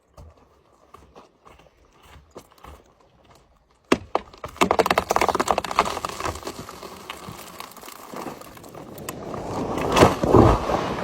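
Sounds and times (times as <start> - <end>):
wood cracking and splintering: 3.8 - 11.0
tree falling with rustling: 3.9 - 11.0.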